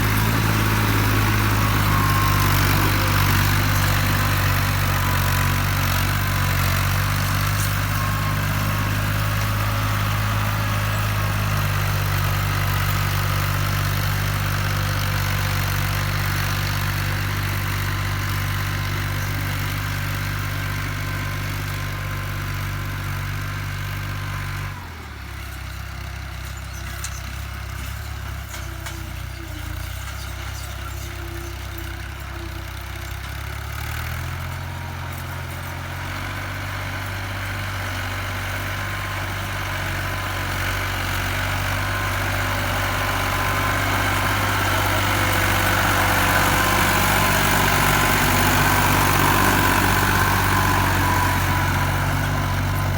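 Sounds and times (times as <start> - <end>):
engine running with low hum: 0.0 - 52.9.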